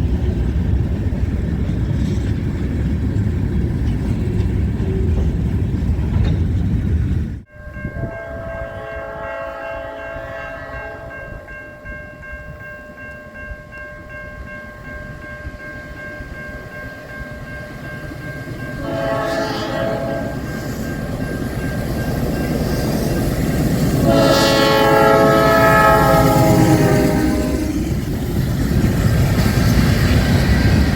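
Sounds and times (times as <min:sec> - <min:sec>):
locomotive horn chord: 0:08.0 - 0:11.5, 0:18.8 - 0:20.6, 0:24.0 - 0:27.8.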